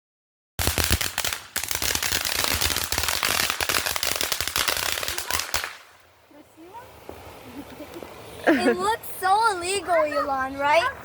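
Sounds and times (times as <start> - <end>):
fireworks bangs and crackles: 0.6 - 6.0.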